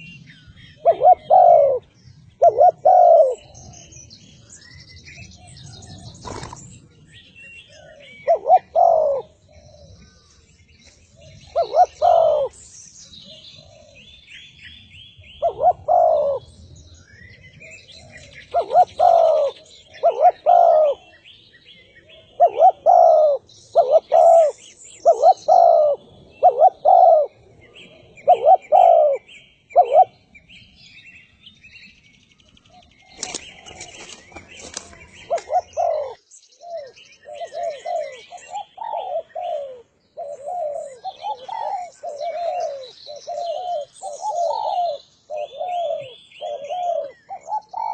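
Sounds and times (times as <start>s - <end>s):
small birds chirping: 0.0s - 47.9s
dove cooing: 0.8s - 3.7s, 7.7s - 10.0s, 11.2s - 12.6s, 13.2s - 14.1s, 15.3s - 16.6s, 17.6s - 21.2s, 22.0s - 30.3s, 33.0s - 47.9s.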